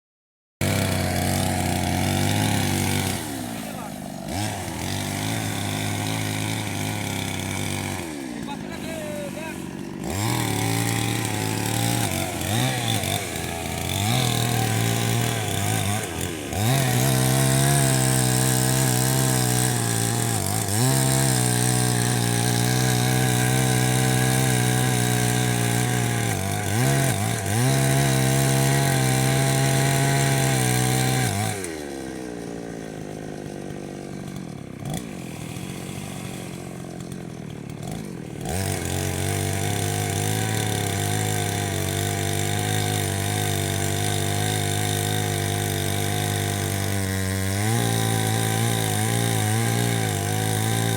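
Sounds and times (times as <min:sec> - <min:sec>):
chainsaw cutting wood: 0:00.6 - 0:50.9.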